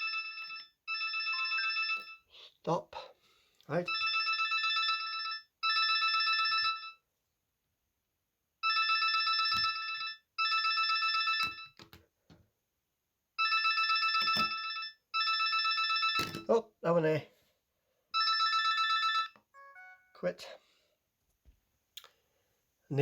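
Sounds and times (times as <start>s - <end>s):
phone alarm trilling: 0.0s - 2.2s, 13.4s - 16.5s, 18.2s - 20.3s.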